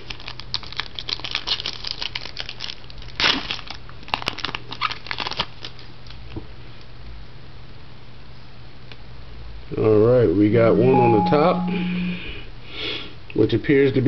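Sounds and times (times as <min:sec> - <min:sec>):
wrapper crinkling: 0:00.0 - 0:06.2.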